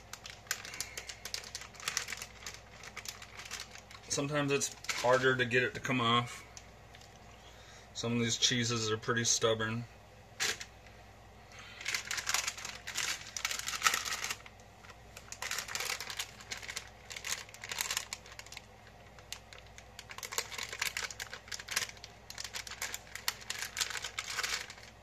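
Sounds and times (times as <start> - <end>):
plastic packaging crinkling: 0.0 - 7.3, 10.4 - 10.7, 11.6 - 25.0.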